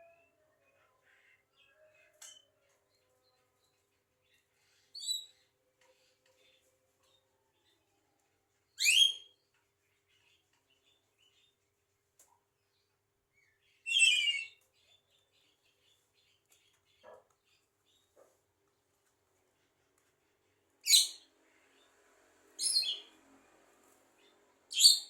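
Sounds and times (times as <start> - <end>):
bird whistle: 8.8 - 9.3.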